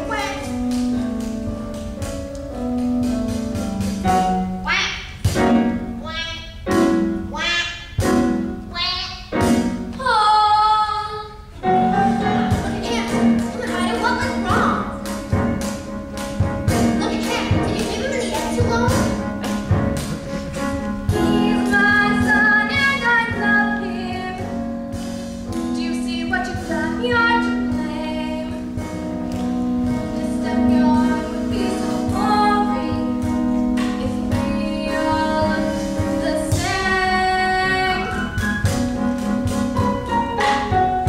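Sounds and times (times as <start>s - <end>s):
instrumental accompaniment: 0.0s - 10.8s, 11.4s - 41.0s
young voices singing: 10.0s - 15.0s, 16.8s - 24.3s.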